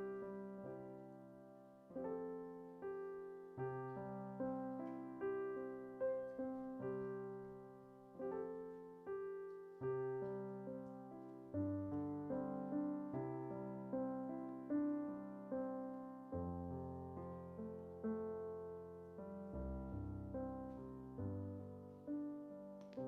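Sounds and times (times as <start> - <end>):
slow soft piano chords: 0.0 - 23.0.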